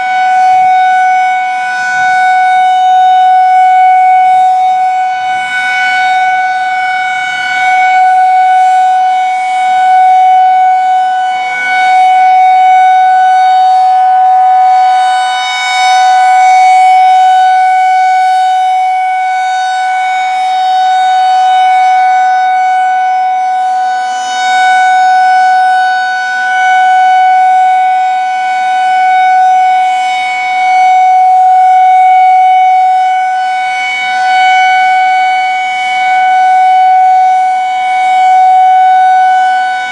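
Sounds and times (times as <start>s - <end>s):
rotating tornado siren: 0.0s - 39.9s.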